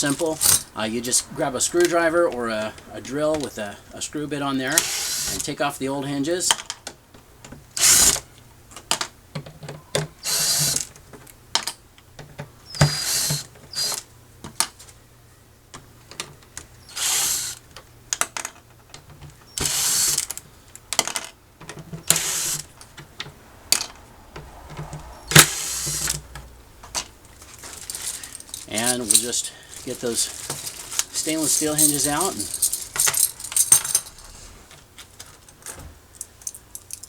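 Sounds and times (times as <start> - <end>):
screws being turned out: 19.5 - 20.4, 22.0 - 22.8, 27.4 - 34.4.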